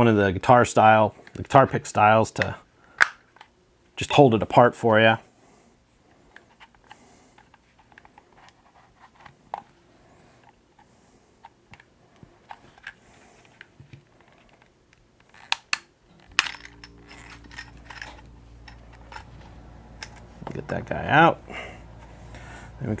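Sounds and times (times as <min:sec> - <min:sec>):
plastic clips snapping: 0:02.4 - 0:03.5, 0:15.2 - 0:19.3
low steady hum: 0:15.4 - 0:23.0.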